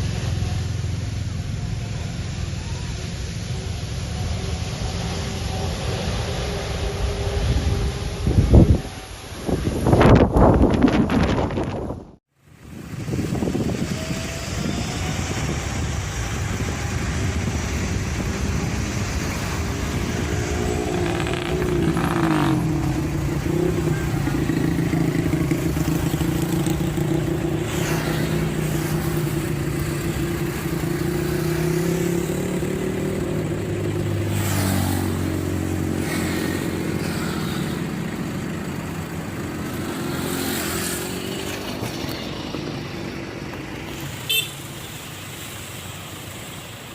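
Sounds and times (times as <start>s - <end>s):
motorcycles and cars passing: 0.0s - 46.9s.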